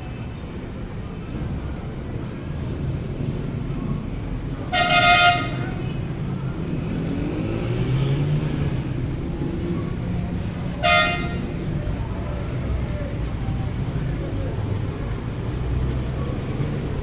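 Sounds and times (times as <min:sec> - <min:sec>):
road traffic rumble: 0:00.0 - 0:17.0
vehicle horn honking: 0:04.7 - 0:05.8, 0:10.8 - 0:11.5
engine note rising and falling: 0:06.4 - 0:09.9.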